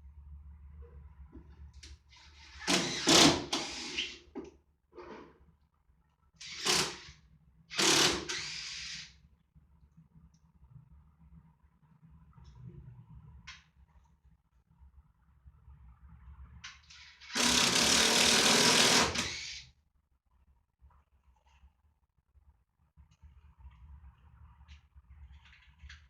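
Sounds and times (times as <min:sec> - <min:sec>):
mechanical rattling bursts: 0:17.2 - 0:19.6.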